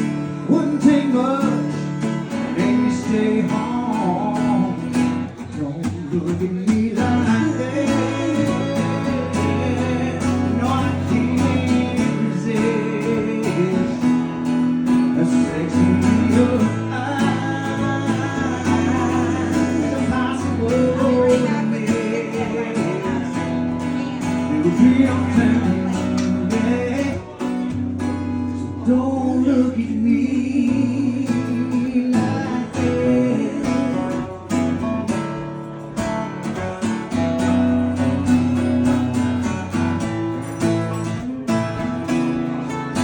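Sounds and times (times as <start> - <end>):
person singing: 0.0 - 27.8, 28.5 - 34.8
guitar strumming chords: 0.0 - 43.0.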